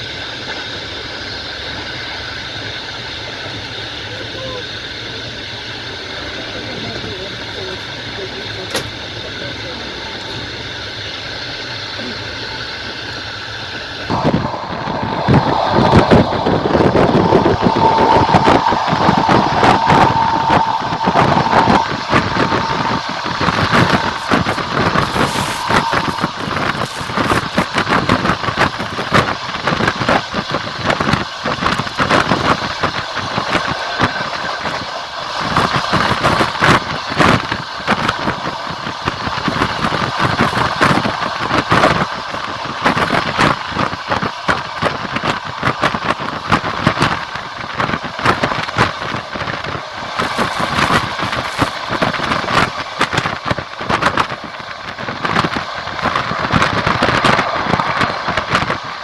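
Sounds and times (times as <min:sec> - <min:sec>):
train rolling rumble: 0:00.0 - 0:59.0
wheel clicks on rails: 0:20.2 - 0:59.0.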